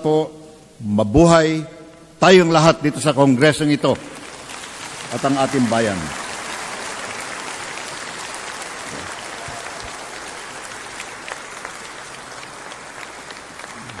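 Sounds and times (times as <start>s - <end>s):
audience applauding: 4.1s - 14.0s.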